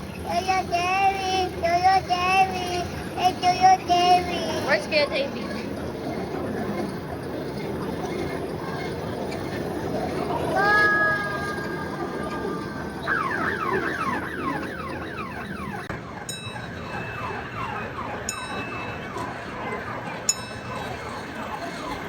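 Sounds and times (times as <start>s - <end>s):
short ringing ding: 10.6s - 13.1s
electronic siren-like falling tones: 10.6s - 16.0s.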